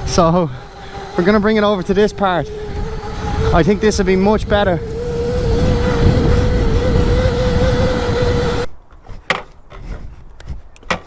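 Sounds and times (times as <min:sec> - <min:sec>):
electric motor whine: 0:00.0 - 0:08.7
wind: 0:00.0 - 0:11.0.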